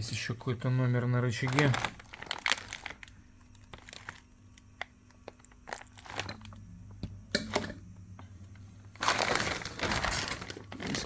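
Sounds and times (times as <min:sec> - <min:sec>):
faint steady hum: 0:00.0 - 0:11.0
packaging rustling: 0:01.3 - 0:06.6, 0:08.9 - 0:11.0.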